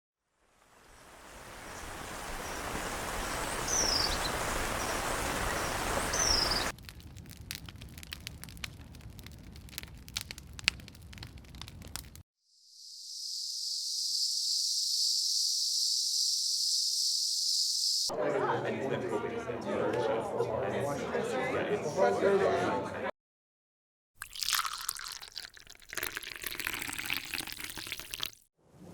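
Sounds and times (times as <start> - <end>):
falling bird chirps: 1.6 - 6.7, 12.6 - 18.1
scattered crackles and clicks: 6.7 - 12.2.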